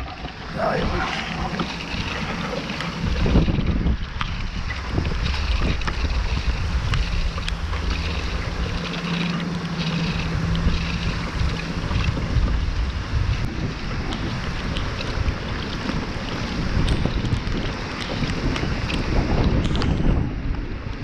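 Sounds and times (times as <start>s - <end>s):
low steady hum: 0.0s - 17.3s
wind buffeting microphone: 0.0s - 21.0s.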